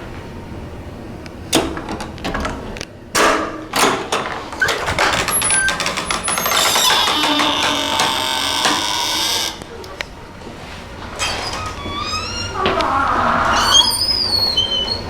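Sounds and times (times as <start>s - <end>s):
rattling clicks: 3.8s - 10.0s.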